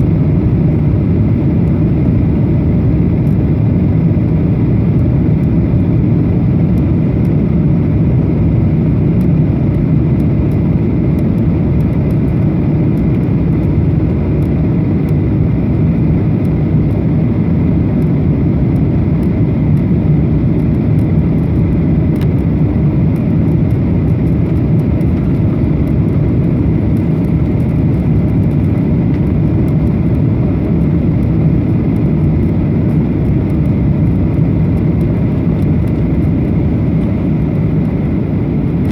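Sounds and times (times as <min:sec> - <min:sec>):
airliner cabin rumble: 0:00.0 - 0:38.9.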